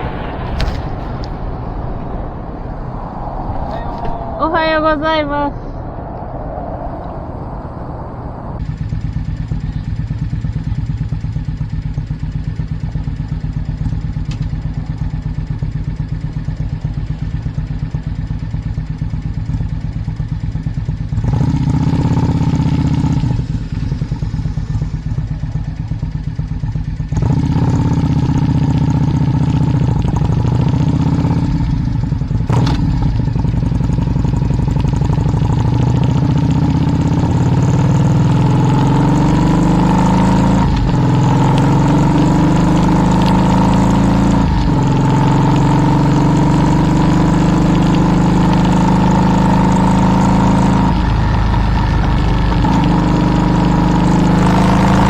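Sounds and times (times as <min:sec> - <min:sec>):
rushing noise: 0:00.0 - 0:09.6
vehicle engine running: 0:00.0 - 0:55.0.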